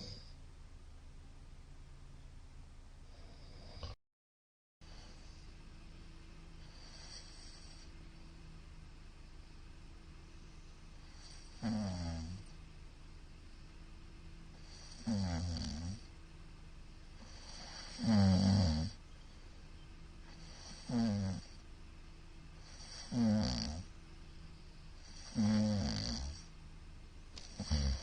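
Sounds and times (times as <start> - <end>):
quiet breathing: 3.0 - 4.0, 4.8 - 28.0
man snoring loudly: 11.2 - 12.5, 14.6 - 16.0, 17.3 - 19.0, 20.4 - 21.6, 22.6 - 23.9, 25.0 - 26.5, 27.4 - 28.0.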